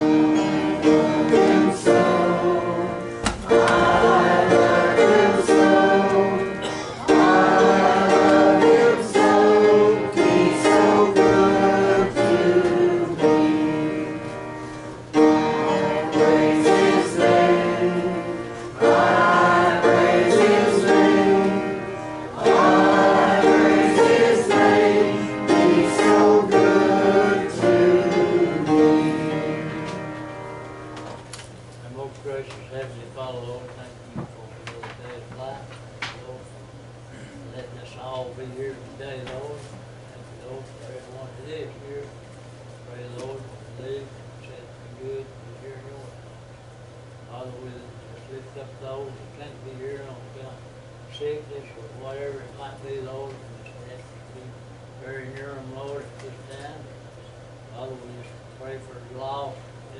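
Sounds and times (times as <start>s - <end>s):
group singing gospel: 0.0s - 31.2s
guitar accompaniment: 0.0s - 31.6s.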